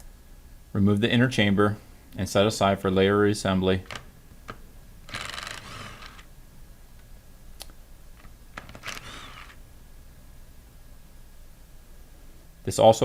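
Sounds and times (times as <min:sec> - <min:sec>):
metal scraping rasps: 0:05.1 - 0:06.3, 0:08.6 - 0:09.6.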